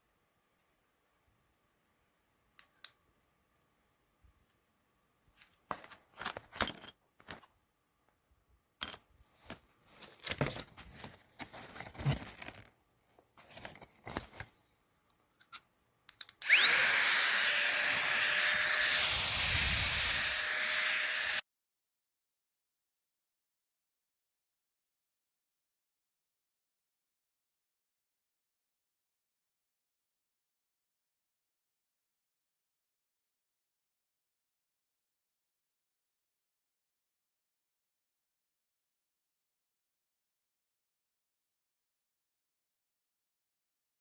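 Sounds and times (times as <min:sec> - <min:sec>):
mini electric air pump whirring: 0:16.4 - 0:21.4.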